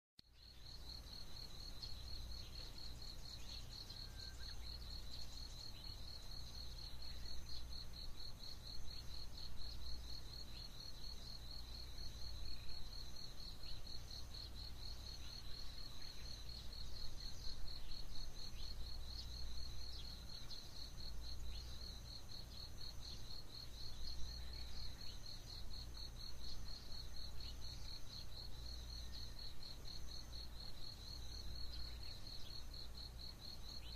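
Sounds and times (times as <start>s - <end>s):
insect chirping in fast pulse: 0.3s - 33.9s
faint bird calls: 3.4s - 4.9s.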